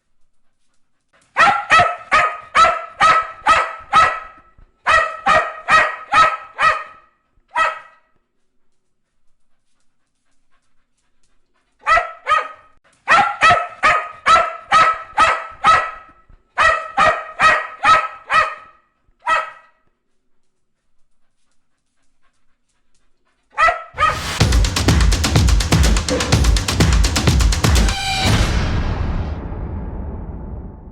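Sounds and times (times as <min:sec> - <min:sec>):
dog barking: 0:01.4 - 0:08.2, 0:11.8 - 0:19.9, 0:23.5 - 0:24.4
music: 0:24.0 - 0:30.9.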